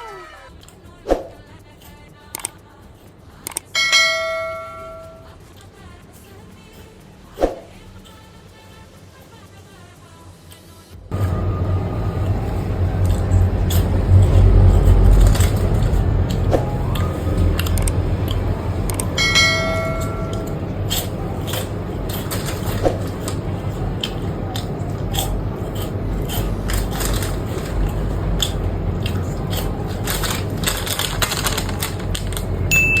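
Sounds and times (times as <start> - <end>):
brief high-pitched tone: 3.8 - 5.3, 18.9 - 20.7, 32.6 - 33.0
low background rumble: 11.1 - 33.0
crunchy snack chewing: 12.2 - 19.2, 20.1 - 32.6.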